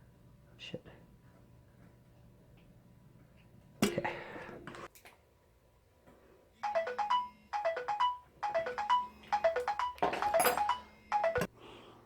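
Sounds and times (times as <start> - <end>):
marimba-like phone ringtone: 6.6 - 11.5.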